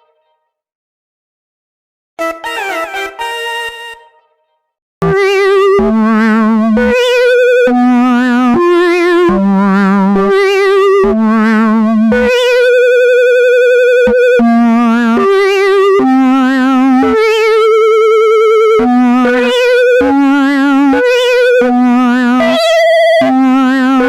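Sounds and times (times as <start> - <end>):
synthesizer melody: 5.0 - 24.0.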